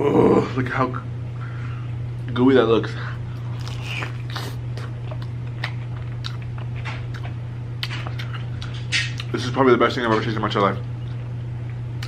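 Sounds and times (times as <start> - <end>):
chewing and biting food: 3.2 - 9.3.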